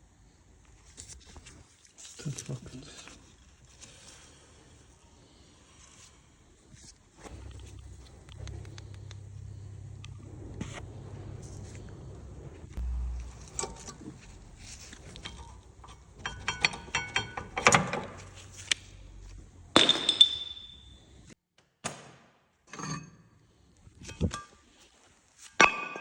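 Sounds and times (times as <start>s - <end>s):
metal tools clinking: 13.3s - 18.5s.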